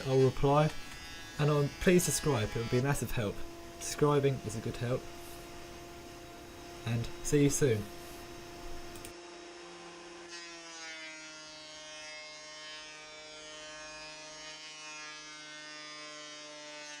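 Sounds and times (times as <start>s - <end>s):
exhaust fan motor humming: 1.5s - 9.1s.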